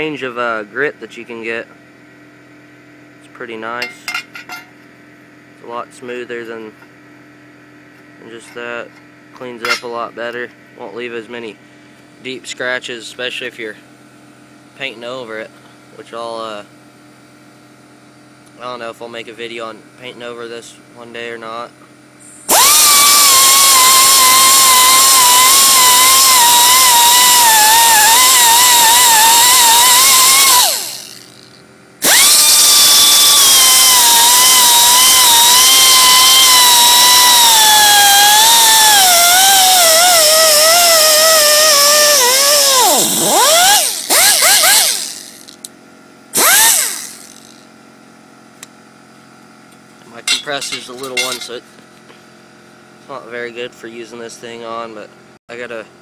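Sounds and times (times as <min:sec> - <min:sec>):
pneumatic die grinder whining: 0:22.2 - 0:45.7, 0:46.3 - 0:47.7, 0:50.4 - 0:51.6.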